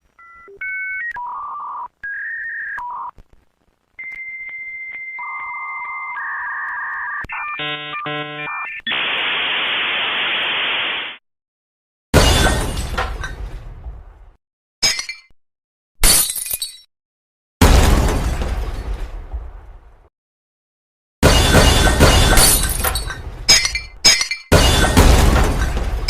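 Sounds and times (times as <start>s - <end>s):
glass smashing: 12.2s - 13.7s, 14.8s - 15.3s, 16.0s - 16.9s, 21.2s - 26.0s
falling glass pieces hitting: 16.0s - 16.9s, 21.2s - 26.0s.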